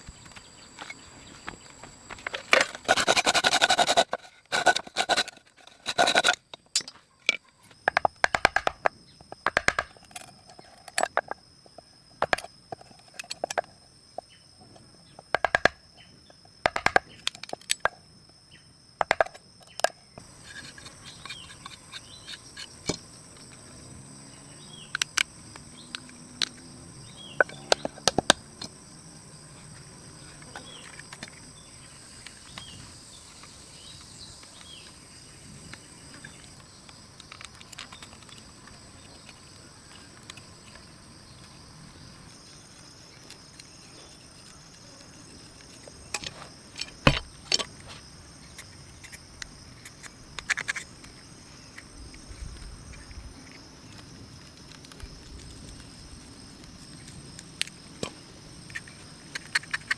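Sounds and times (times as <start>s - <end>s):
sharp knocks and clicks: 2.1s - 10.3s, 15.2s - 15.8s, 16.6s - 18.0s, 19.0s - 20.0s, 46.1s - 47.7s
loud rasping scrapes: 2.6s - 6.4s.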